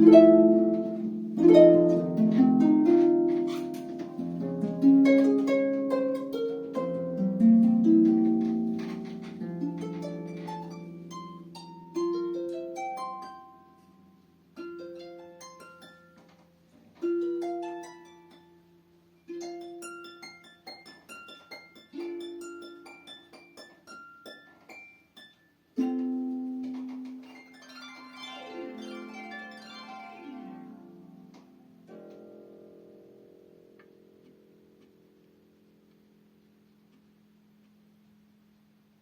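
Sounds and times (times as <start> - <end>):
harp playing plucked notes: 0.0 - 36.4.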